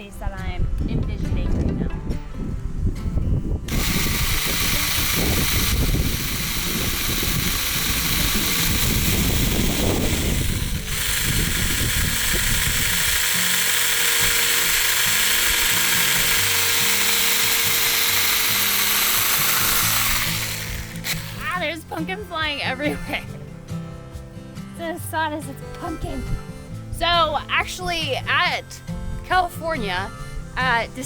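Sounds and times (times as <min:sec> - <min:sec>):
chainsaw cutting pumpkin: 0:03.7 - 0:21.8.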